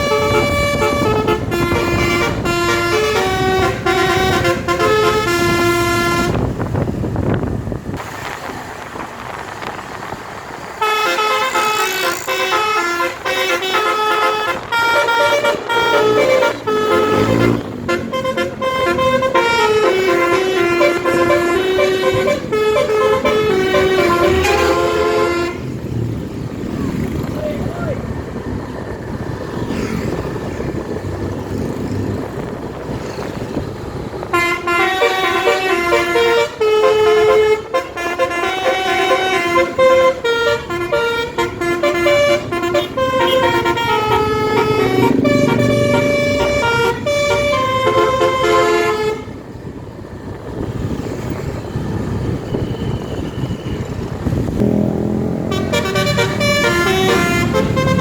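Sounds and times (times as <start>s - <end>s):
multi-tone air horn melody: 0.0s - 6.6s, 10.8s - 25.7s, 34.2s - 49.4s, 54.6s - 58.0s
road and engine noise: 0.0s - 58.0s.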